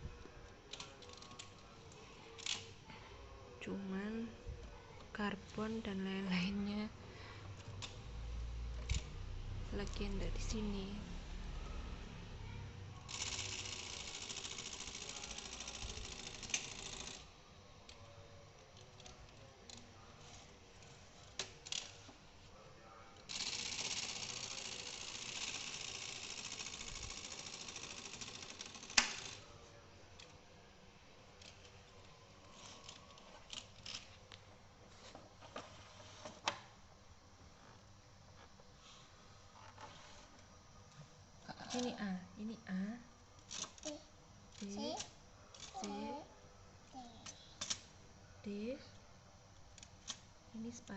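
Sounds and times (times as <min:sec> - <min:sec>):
typewriter mechanical rattle: 0:13.1 - 0:17.3, 0:23.3 - 0:29.4
typewriter clicks: 0:28.1 - 0:29.4.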